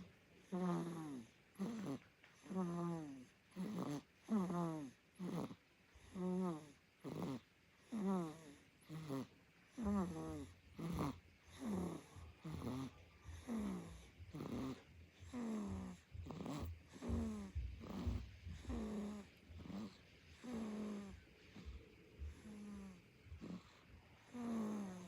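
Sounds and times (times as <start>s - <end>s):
squeaky whistling snoring: 0.5s - 5.6s, 6.2s - 21.7s, 22.4s - 25.0s.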